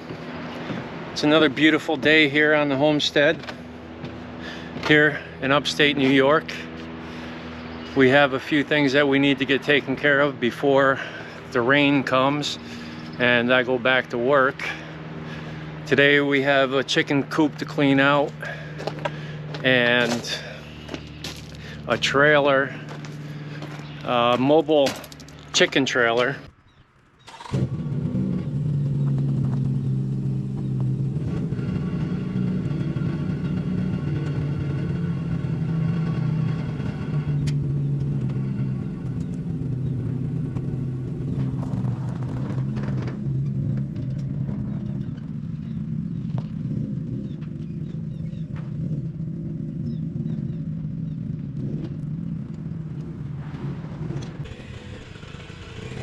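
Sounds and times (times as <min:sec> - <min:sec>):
vehicle engine running: 0:00.0 - 0:56.0
knocks and rattles: 0:40.5 - 0:45.4.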